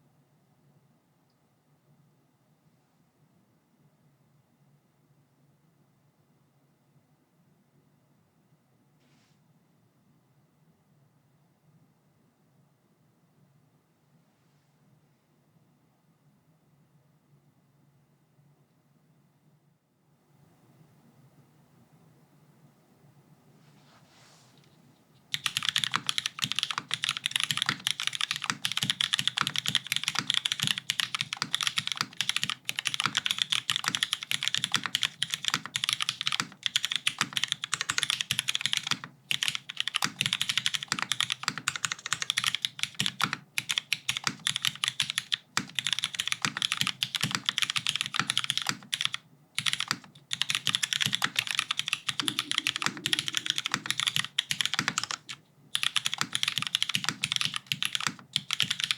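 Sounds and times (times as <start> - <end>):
mechanical keyboard typing: 25.3 - 58.9.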